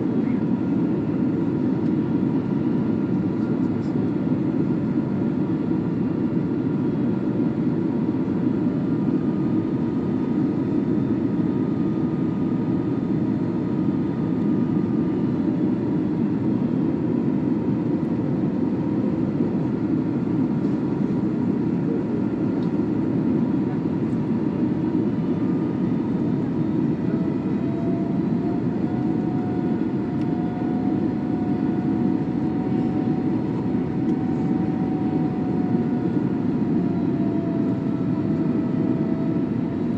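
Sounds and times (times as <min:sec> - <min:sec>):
airliner cabin rumble: 0:00.0 - 0:39.9
faint engine tones: 0:20.4 - 0:39.9.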